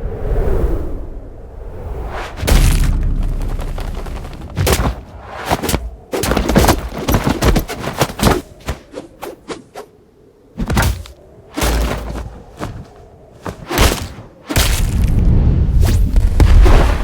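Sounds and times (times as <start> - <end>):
heavy bang with low rumble: 2.4 - 5.0
sharp cracks and hits: 2.4 - 8.8.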